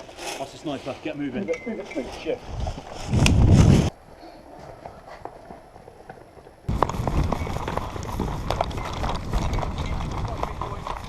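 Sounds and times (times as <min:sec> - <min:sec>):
wind rumble on microphone: 0:02.4 - 0:03.9, 0:06.7 - 0:11.0
running footsteps: 0:04.5 - 0:11.0.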